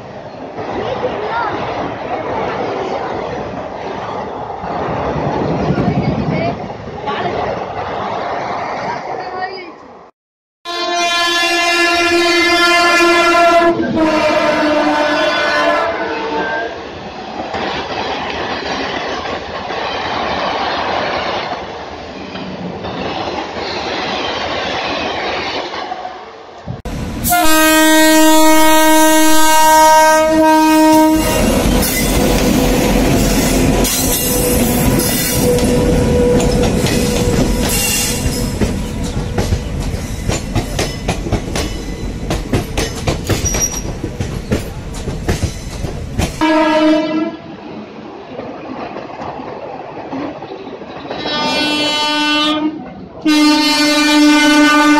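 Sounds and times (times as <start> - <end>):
train wheel and rail rumble: 0.0 - 10.1, 10.7 - 54.9
train horn held tone: 10.7 - 16.8, 27.2 - 31.6, 34.4 - 38.4, 46.4 - 47.5, 51.2 - 54.9
wheels clicking over rail joints: 34.9 - 46.4.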